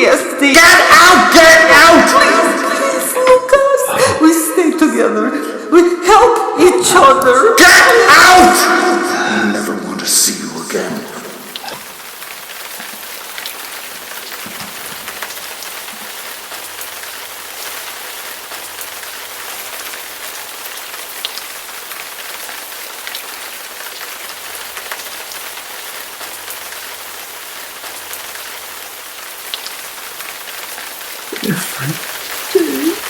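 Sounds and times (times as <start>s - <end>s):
steady rain: 0.0s - 33.0s
raindrops ticking: 10.0s - 33.0s.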